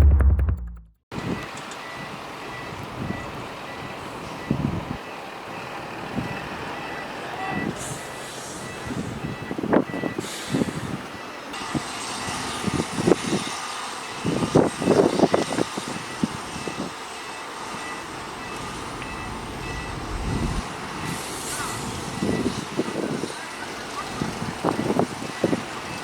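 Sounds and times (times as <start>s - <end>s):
faint high beeping: 16.0s - 21.3s
diesel engine running: 16.6s - 24.9s.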